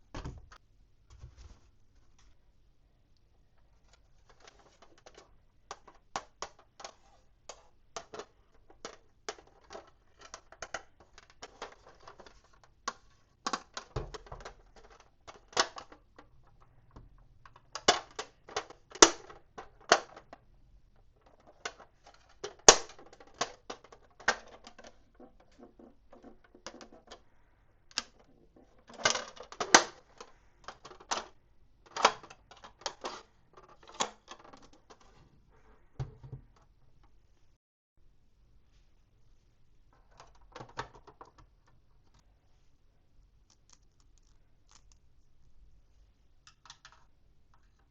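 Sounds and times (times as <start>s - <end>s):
plastic toy pieces clicking: 4.4s - 16.3s.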